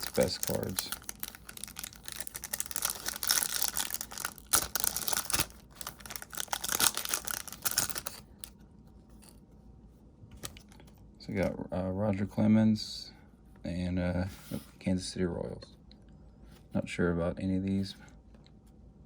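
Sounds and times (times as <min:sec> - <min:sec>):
plastic wrapper tearing and crinkling: 0:00.0 - 0:08.5.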